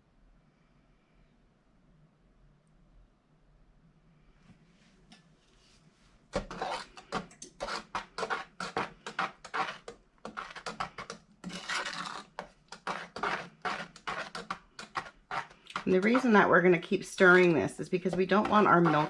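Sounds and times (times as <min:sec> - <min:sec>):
utensil scraping saucepan bottom: 0:06.3 - 0:19.0.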